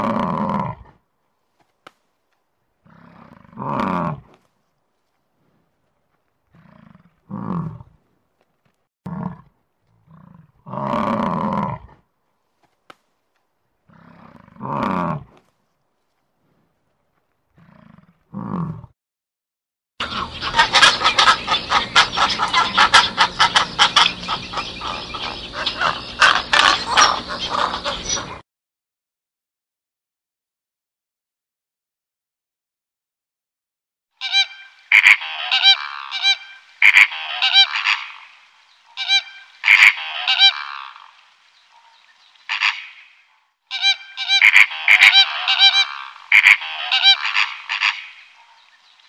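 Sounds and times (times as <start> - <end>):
large animal roaring: 0.0 - 1.0, 2.8 - 4.3, 6.5 - 8.0, 9.1 - 12.0, 13.9 - 15.3, 17.6 - 19.0.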